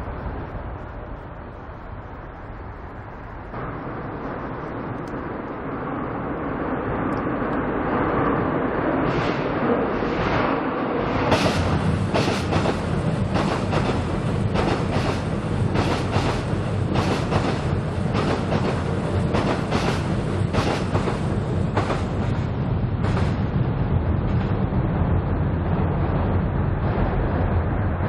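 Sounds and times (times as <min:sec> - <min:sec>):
train rumbling on bridge: 0:00.0 - 0:28.0
wheels clacking over rail joints: 0:11.3 - 0:22.4.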